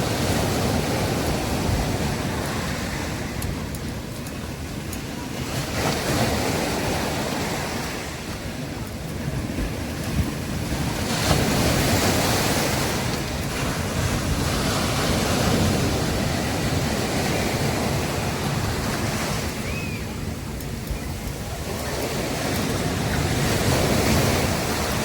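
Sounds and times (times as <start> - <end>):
sea waves breaking on beach: 0.0 - 25.0.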